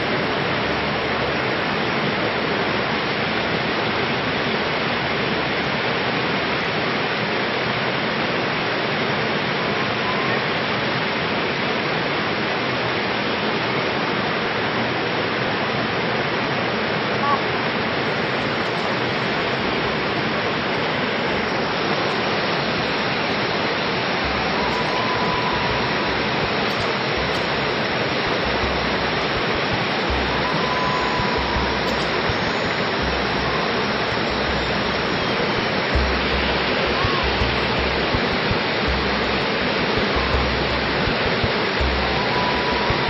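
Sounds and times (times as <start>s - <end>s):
stream water rushing: 0.0s - 43.0s
low thumps: 24.2s - 43.0s.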